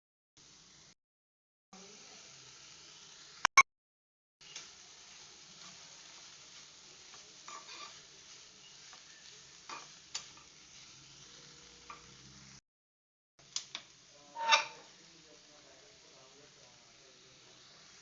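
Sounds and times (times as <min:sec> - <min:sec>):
food sizzling in hot oil: 0:00.4 - 0:01.0, 0:01.8 - 0:03.6, 0:04.4 - 0:12.6, 0:13.4 - 0:18.0
spoon scraping a pan: 0:07.4 - 0:11.0, 0:14.3 - 0:14.9.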